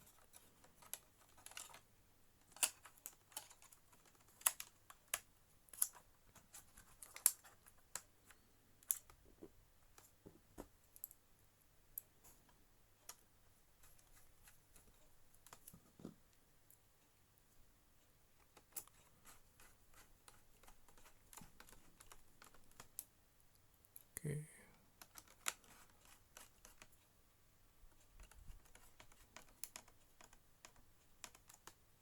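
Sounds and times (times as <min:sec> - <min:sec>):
laptop parts clicking: 0:00.0 - 0:09.2, 0:25.0 - 0:27.0, 0:28.0 - 0:31.8.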